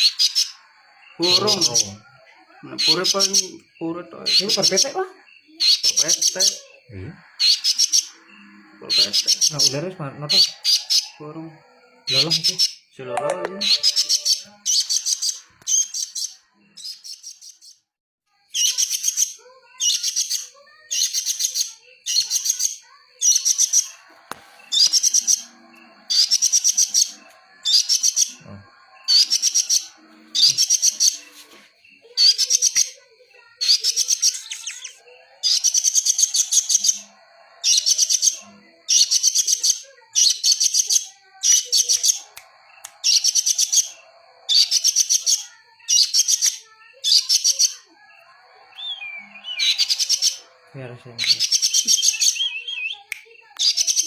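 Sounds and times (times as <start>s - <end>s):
bird chattering: 0.0s - 12.8s, 13.6s - 17.7s, 18.5s - 54.0s
faint steady high tone: 13.0s - 14.7s.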